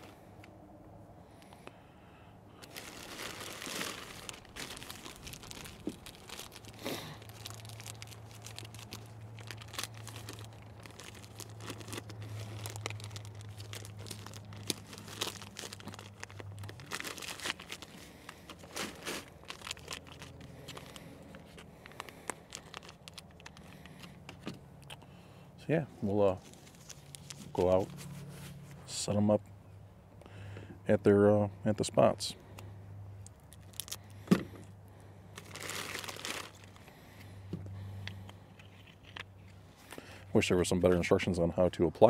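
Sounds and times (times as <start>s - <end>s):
low steady hum: 0.0s - 42.0s
plastic packaging crinkling: 2.6s - 25.0s, 26.4s - 28.2s, 33.2s - 34.1s, 35.4s - 37.0s.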